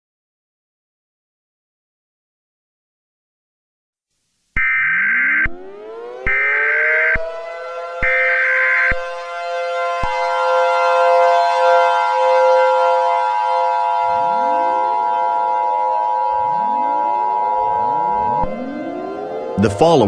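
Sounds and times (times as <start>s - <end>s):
civil defense siren wailing: 4.6s - 20.0s
two-tone attention signal: 16.2s - 20.0s
electronic data bursts: 16.3s - 20.0s.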